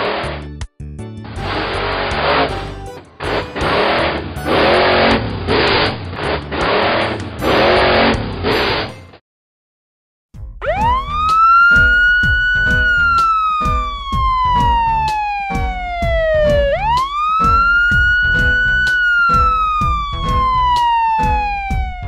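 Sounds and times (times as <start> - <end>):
background music with steady beat: 0.0 - 5.5, 10.4 - 22.0
wailing siren: 3.5 - 5.2, 10.6 - 22.0.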